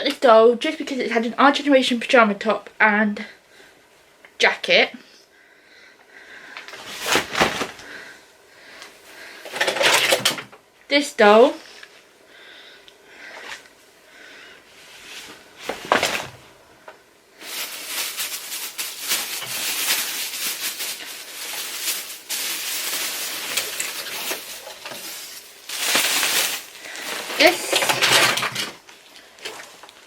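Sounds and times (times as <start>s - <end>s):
crackly rustling of rucksack: 6.6s - 8.1s, 14.9s - 16.6s, 17.4s - 30.0s.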